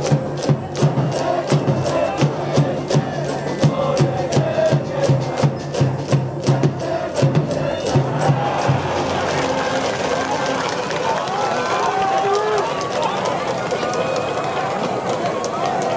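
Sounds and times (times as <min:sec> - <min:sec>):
steady drum beat: 0:00.0 - 0:10.6
students chanting: 0:00.0 - 0:12.2
brass band playing: 0:06.9 - 0:11.2.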